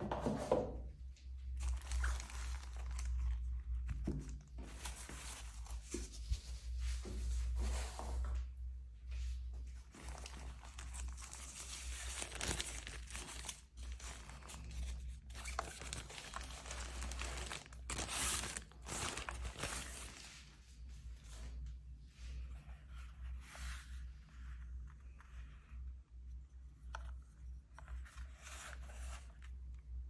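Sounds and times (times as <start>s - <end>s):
packaging crinkling and rustling: 1.5s - 6.7s, 9.8s - 20.6s.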